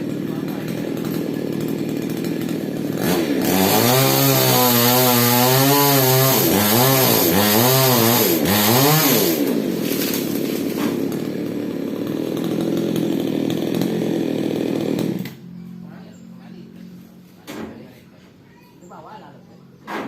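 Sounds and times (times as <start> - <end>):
chainsaw running and revving: 0.0 - 15.5.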